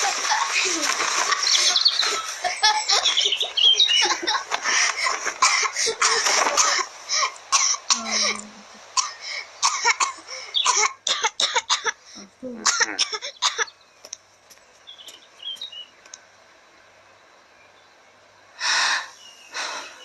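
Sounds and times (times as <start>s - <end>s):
person laughing: 0.0s - 7.4s
person coughing: 5.4s - 12.0s, 12.6s - 13.7s.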